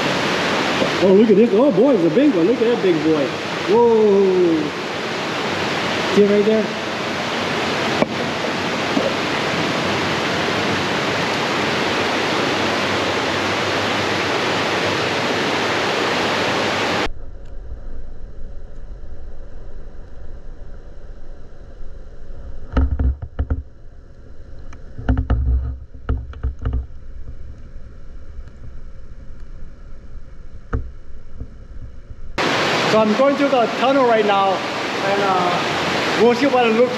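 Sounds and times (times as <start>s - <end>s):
stream water rushing: 0.0s - 17.1s, 32.4s - 36.9s
low thuds and knocks: 22.7s - 23.7s, 25.0s - 27.4s.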